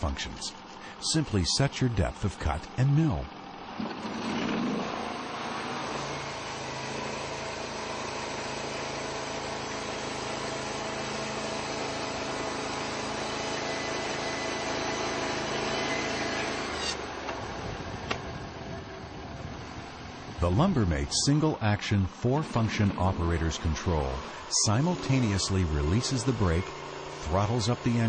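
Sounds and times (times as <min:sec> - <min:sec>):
sawmill engine running: 0:00.0 - 0:28.0
band blade sawing log: 0:12.7 - 0:17.0, 0:22.4 - 0:28.0.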